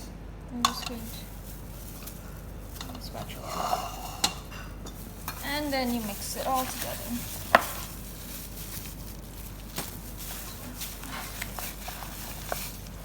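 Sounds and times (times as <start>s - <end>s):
spatula mixing mash in bowl: 0.6s - 13.0s
spatula knocking bowl: 7.5s - 7.9s.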